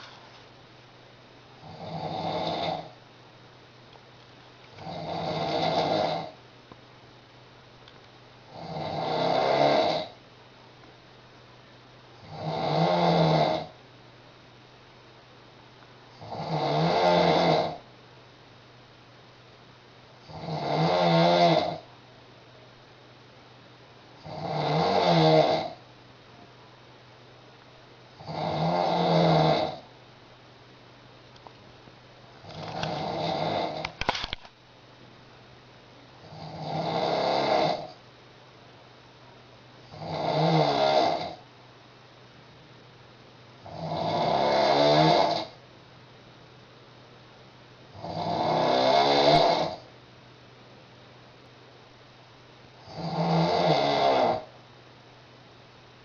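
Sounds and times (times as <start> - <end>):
woman snoring heavily: 1.6 - 3.0, 4.8 - 6.4, 8.5 - 10.2, 12.2 - 13.8, 16.2 - 17.9, 20.2 - 21.9, 24.2 - 25.8, 28.2 - 29.9, 32.7 - 34.0, 36.2 - 38.0, 39.9 - 41.4, 43.6 - 45.6, 48.0 - 49.9, 52.8 - 54.5.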